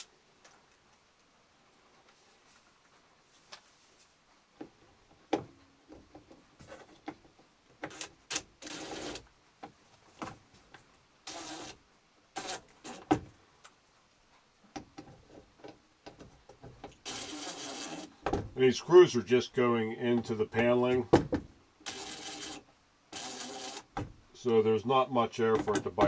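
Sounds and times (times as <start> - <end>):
screws clicking and scraping: 7.8 - 9.3, 11.2 - 11.8, 12.4 - 13.1, 16.9 - 18.1, 21.8 - 24.0
short rasping bursts: 11.2 - 13.1, 17.0 - 18.2, 21.8 - 24.0.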